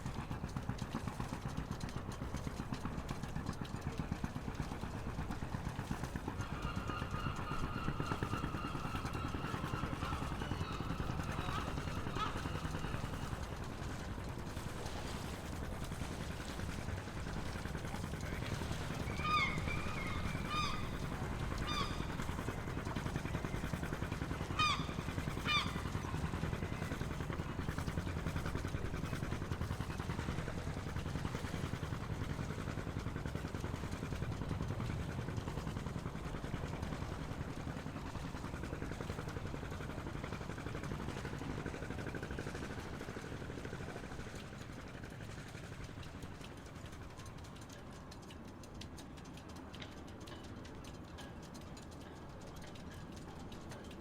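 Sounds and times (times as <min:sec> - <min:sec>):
honking bird calls: 0:19.1 - 0:22.2, 0:24.6 - 0:25.9.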